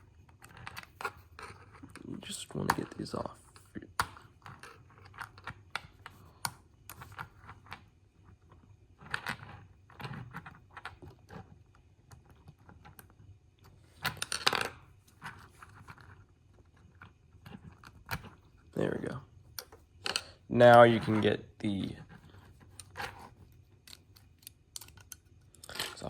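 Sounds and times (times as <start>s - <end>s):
parts scraping: 17.7s - 26.0s
small plastic parts clicking: 22.2s - 26.0s.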